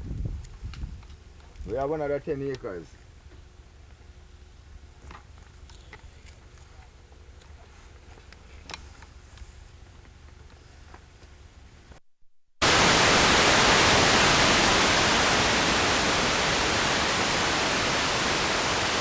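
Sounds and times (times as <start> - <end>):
loud static hiss: 12.6 - 19.0.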